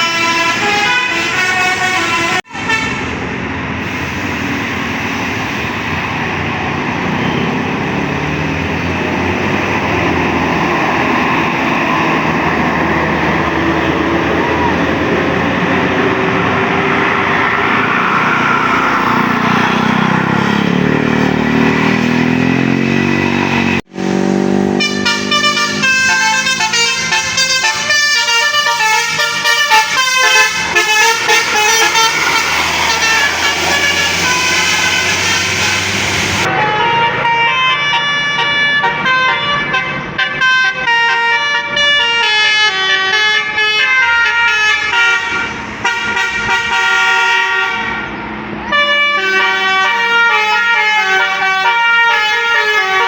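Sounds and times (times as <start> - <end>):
bus horn melody: 0.0 - 4.7, 24.5 - 53.0
bus engine and road noise: 0.0 - 53.0.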